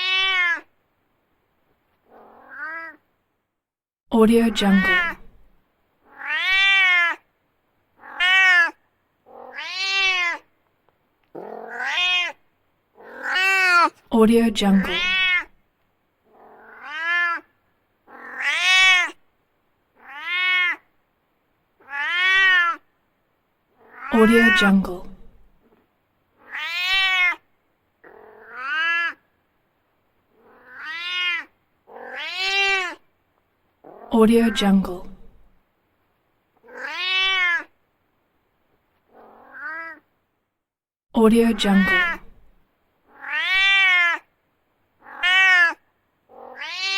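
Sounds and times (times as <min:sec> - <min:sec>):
cat meowing: 0:00.0 - 0:00.7, 0:02.1 - 0:03.0, 0:04.7 - 0:07.3, 0:08.0 - 0:10.5, 0:11.4 - 0:12.4, 0:13.0 - 0:14.0, 0:14.8 - 0:15.6, 0:16.3 - 0:17.5, 0:18.1 - 0:19.2, 0:20.0 - 0:20.9, 0:21.8 - 0:22.9, 0:23.8 - 0:24.7, 0:26.4 - 0:29.2, 0:30.4 - 0:33.0, 0:36.6 - 0:37.8, 0:39.1 - 0:40.1, 0:41.8 - 0:42.5, 0:43.1 - 0:44.3, 0:45.0 - 0:46.9.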